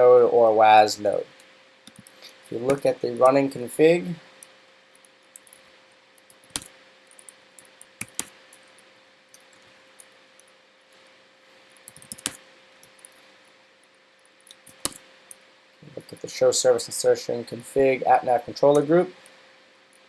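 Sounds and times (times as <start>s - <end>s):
faint steady hum: 0.0s - 20.0s
computer keyboard clicks and taps: 1.9s - 2.2s, 6.3s - 7.4s, 8.0s - 8.3s, 11.9s - 12.4s, 14.5s - 15.0s.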